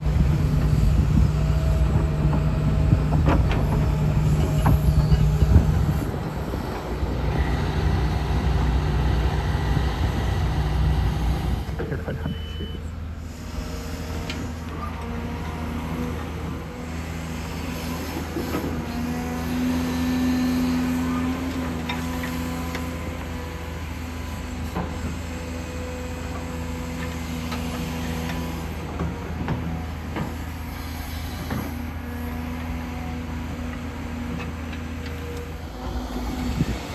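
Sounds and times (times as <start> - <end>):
excavator engine running: 0.0 - 36.9
metallic knocks and clanks: 1.9 - 6.3.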